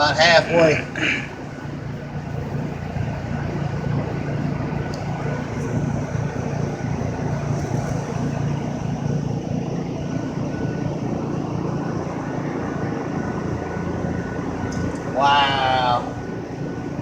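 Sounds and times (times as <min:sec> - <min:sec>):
constant noise: 0:00.0 - 0:17.0
engine-like hum: 0:00.0 - 0:17.0.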